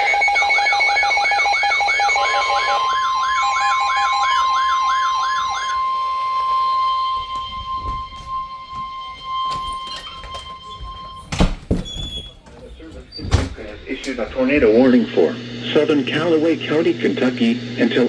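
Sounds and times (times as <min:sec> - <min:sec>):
steady beeping tones: 0:00.0 - 0:11.4
warbling siren-like sweep: 0:00.0 - 0:11.4
steady high tone: 0:00.0 - 0:12.1.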